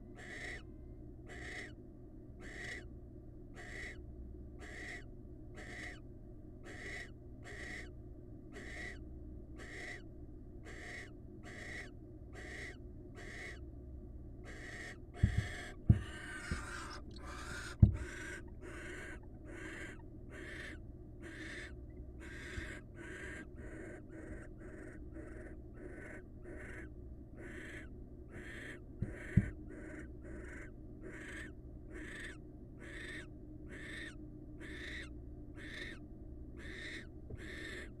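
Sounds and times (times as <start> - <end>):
barn owl hissing calls: 0.2 - 0.7, 1.3 - 1.8, 2.4 - 2.9, 3.5 - 4.0, 4.6 - 6.0, 6.6 - 7.9, 8.5 - 9.0, 9.6 - 13.6, 14.4 - 36.0, 36.6 - 38.0
dull thumps: 15.2 - 18.1.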